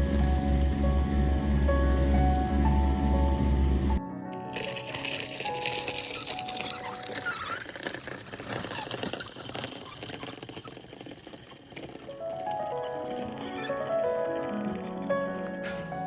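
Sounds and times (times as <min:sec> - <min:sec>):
piano music: 0:00.0 - 0:07.8, 0:12.0 - 0:16.0.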